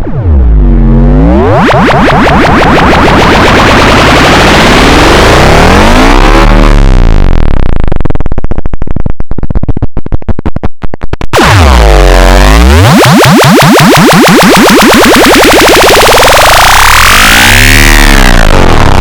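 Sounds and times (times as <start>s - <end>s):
buzzy electronic tones sweeping: 0.0s - 7.5s, 11.4s - 19.0s.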